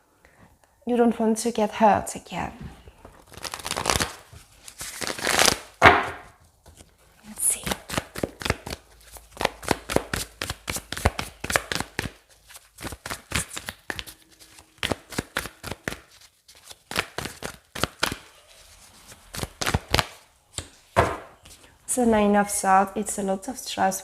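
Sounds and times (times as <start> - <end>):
cards being shuffled: 3.0 - 20.7.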